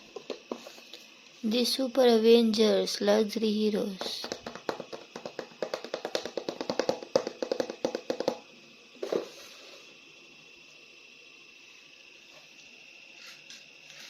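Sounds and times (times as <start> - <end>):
faint hiss with high tone: 0.0 - 14.0
rapid light clicking taps: 4.0 - 8.4.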